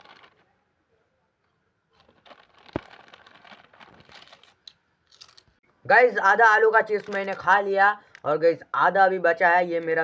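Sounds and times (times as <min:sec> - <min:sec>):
chip packet crinkling: 0:00.0 - 0:00.4, 0:01.9 - 0:05.5.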